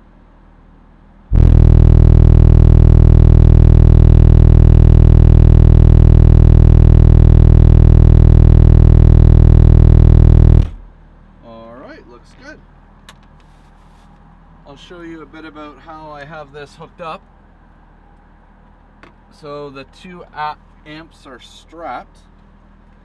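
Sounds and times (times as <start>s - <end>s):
subwoofer low test tone: 1.3s - 10.9s.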